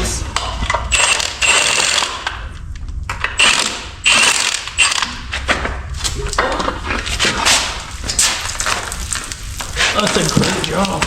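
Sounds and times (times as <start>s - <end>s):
hand tools ratcheting: 0.9s - 2.3s.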